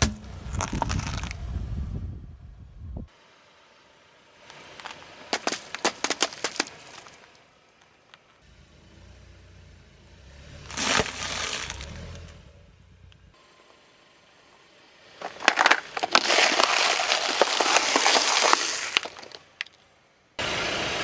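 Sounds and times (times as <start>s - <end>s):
car rolling rumble: 0.0s - 13.4s, 14.4s - 21.0s
tyre crunching objects: 4.8s - 7.4s, 10.7s - 12.2s, 15.2s - 19.8s.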